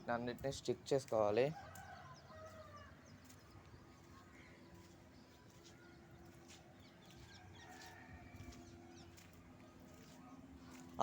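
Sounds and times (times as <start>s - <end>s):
small birds chirping: 0.0s - 11.0s
distant chickens clucking: 6.3s - 11.0s.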